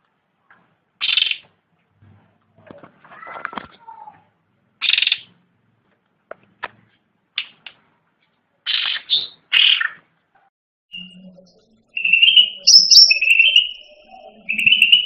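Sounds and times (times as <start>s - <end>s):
songbird calling: 11.0s - 15.0s.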